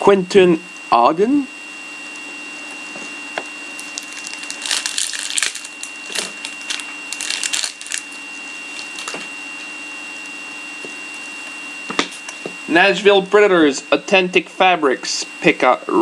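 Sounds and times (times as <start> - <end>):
faint electrical hum: 0.0 - 16.0
wrappers crinkling and rustling: 3.7 - 9.3.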